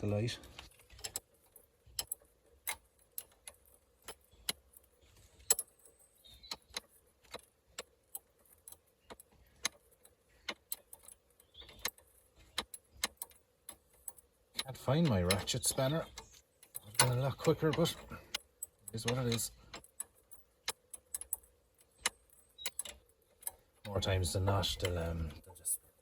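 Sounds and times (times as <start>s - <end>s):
spanner clicking on nut: 0.5s - 26.0s.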